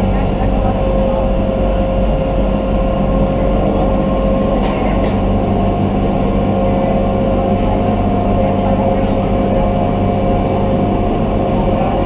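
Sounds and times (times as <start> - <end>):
boat engine droning: 0.0 - 12.0.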